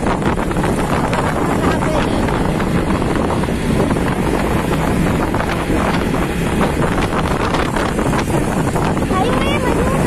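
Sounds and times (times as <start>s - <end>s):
road traffic noise: 0.0s - 10.0s
wind buffeting microphone: 0.0s - 10.0s.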